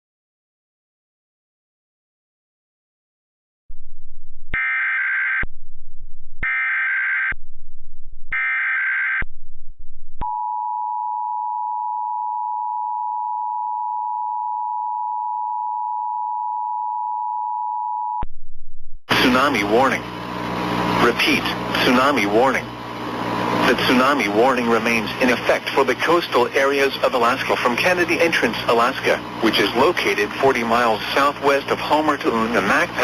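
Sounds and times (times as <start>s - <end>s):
low hum: 3.7s - 4.6s, 5.4s - 6.4s, 7.3s - 8.4s, 9.2s - 26.0s.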